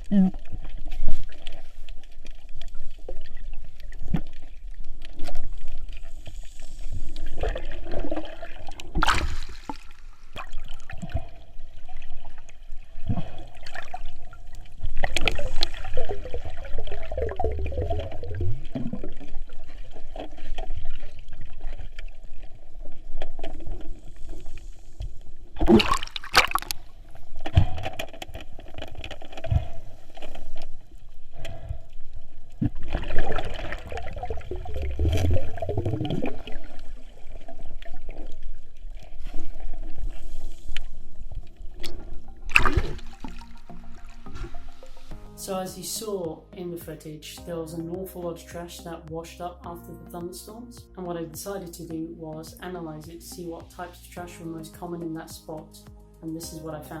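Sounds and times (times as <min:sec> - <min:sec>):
rushes of water: 0:00.0 - 0:45.3
water sloshing and gurgling: 0:00.0 - 0:49.2.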